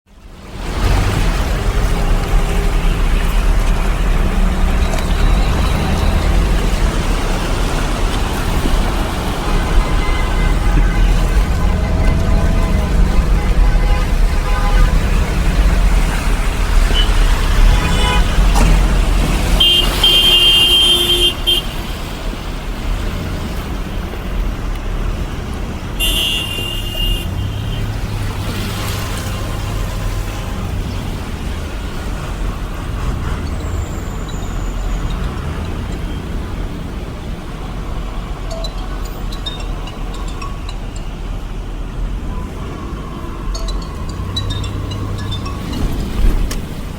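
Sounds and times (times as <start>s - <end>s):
low engine rumble of traffic: 0.1s - 46.9s
car horns honking: 0.7s - 23.2s, 25.8s - 40.7s.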